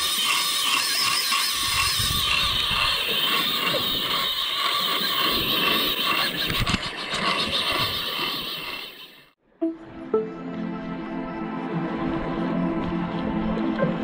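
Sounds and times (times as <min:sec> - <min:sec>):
fishing reel drag buzzing: 0:00.0 - 0:09.3.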